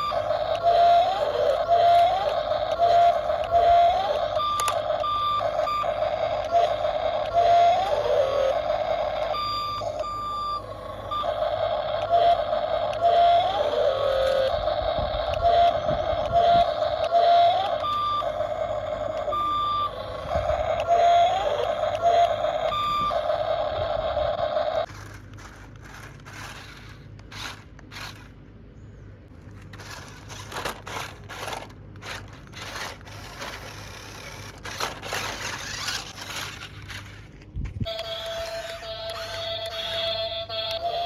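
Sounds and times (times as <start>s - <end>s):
electronic beeping: 0.0s - 24.9s
scraping: 29.3s - 39.4s.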